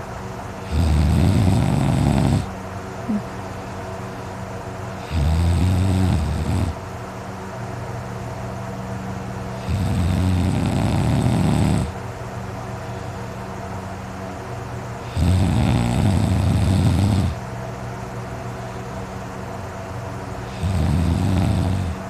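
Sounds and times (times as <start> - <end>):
steady low hum: 0.0 - 22.0
man snoring loudly: 0.6 - 2.5, 5.0 - 6.8, 9.6 - 12.0, 15.0 - 17.4, 20.5 - 22.0.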